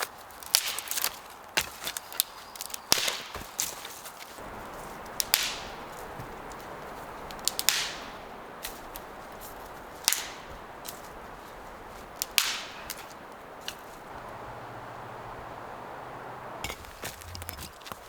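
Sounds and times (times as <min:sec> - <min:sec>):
small clicks and snaps: 0:00.0 - 0:14.3
firewood cracking: 0:00.0 - 0:15.1, 0:15.8 - 0:18.0.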